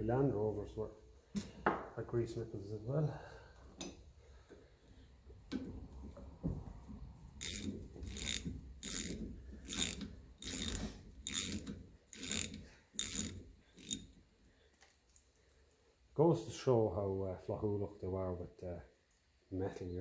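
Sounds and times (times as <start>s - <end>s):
ratchet wrench clicking: 7.4s - 14.2s.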